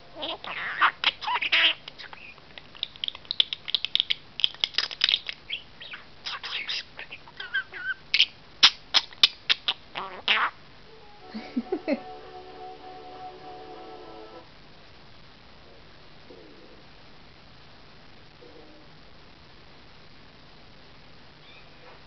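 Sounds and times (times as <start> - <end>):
budgie chattering: 0.2 - 10.6
harsh screechy bird calls: 5.4 - 8.4.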